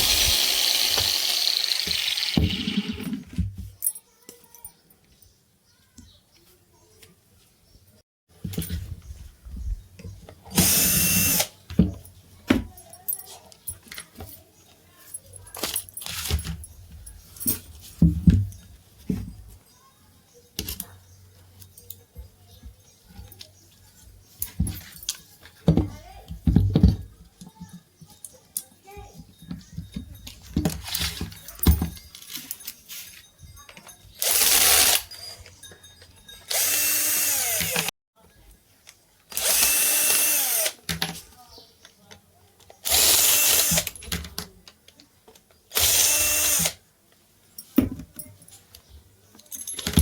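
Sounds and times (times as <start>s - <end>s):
angle grinder whining: 0.0s - 3.2s, 36.5s - 37.9s, 39.4s - 40.8s
metal parts and tools clinking: 26.5s - 37.9s, 47.6s - 50.0s.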